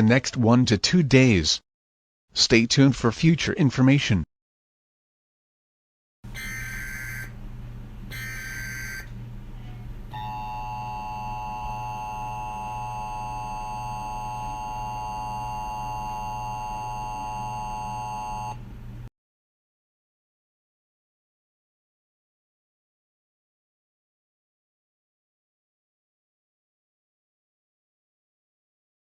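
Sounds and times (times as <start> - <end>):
electronic alarm tone: 6.3 - 7.4, 8.1 - 9.1, 10.1 - 18.6.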